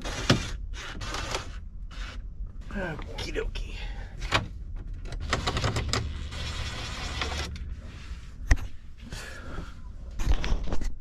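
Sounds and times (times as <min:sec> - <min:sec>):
plastic scraping and rubbing: 0:05.2 - 0:07.9.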